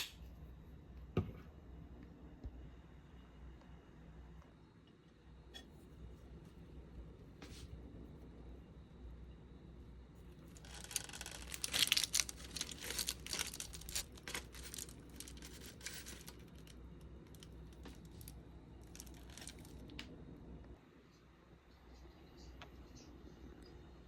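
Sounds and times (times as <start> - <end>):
crinkling and rustling: 10.3 - 20.2.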